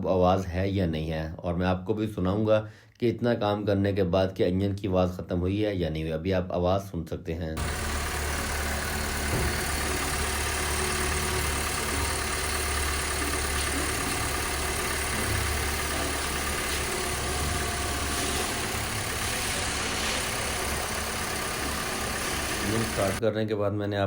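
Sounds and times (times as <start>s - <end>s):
car engine idling: 7.6s - 23.2s.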